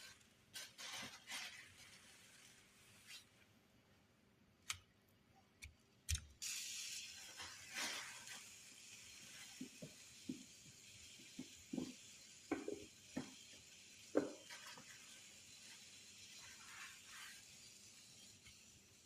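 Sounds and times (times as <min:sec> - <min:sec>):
faint hiss: 0:00.0 - 0:04.4, 0:06.3 - 0:19.0.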